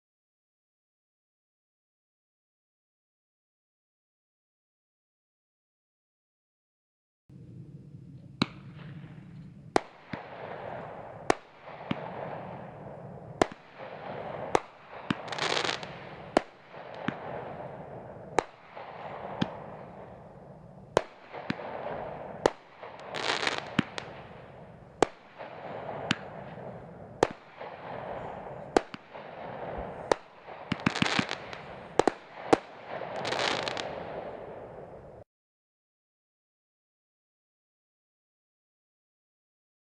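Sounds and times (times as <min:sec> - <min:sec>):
firework bangs: 0:08.4 - 0:35.2
firework crackling and fizzing: 0:08.4 - 0:35.2.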